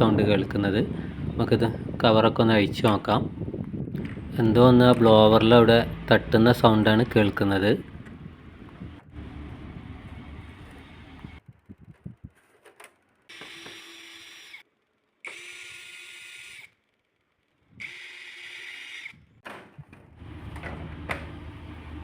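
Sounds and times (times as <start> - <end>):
air conditioner blower rattling: 20.2 - 22.0.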